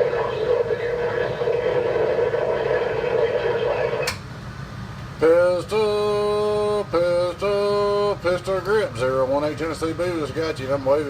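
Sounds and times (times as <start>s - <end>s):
garbled radio voice in static: 0.0s - 4.1s
long steady held tones: 0.0s - 4.2s
radio hiss: 0.0s - 4.2s.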